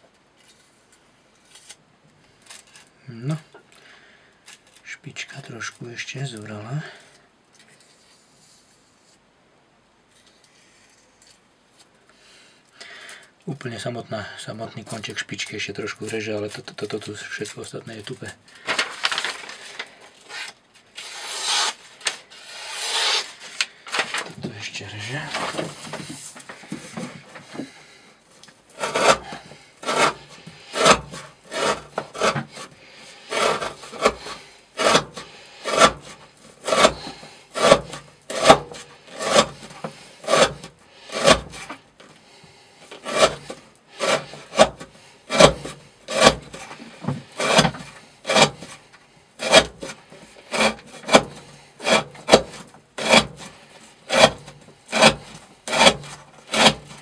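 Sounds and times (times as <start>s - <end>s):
knife slicing through rope: 21.0s - 21.8s, 22.4s - 23.4s, 28.8s - 32.7s, 33.3s - 41.7s, 43.0s - 48.8s, 49.4s - 53.5s, 54.1s - 57.0s.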